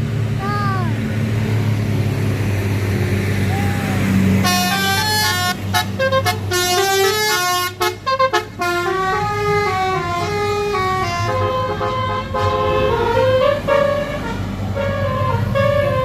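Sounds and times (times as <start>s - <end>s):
bus engine humming: 0.0s - 16.0s
bus musical horn melody: 4.4s - 16.0s.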